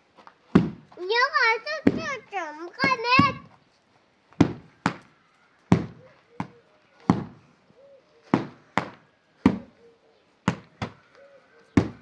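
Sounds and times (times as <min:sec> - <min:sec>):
sharp impacts: 0:08.3 - 0:09.8.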